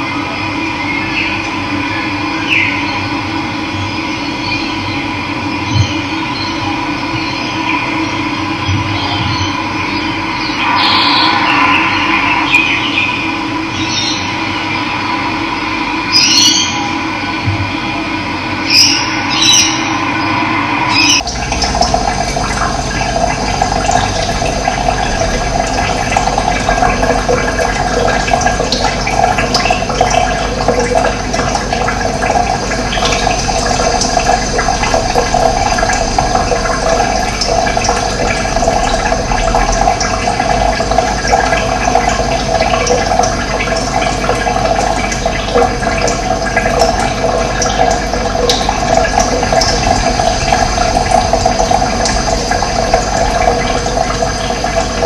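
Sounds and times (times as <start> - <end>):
running water splashing: 20.8 - 55.0.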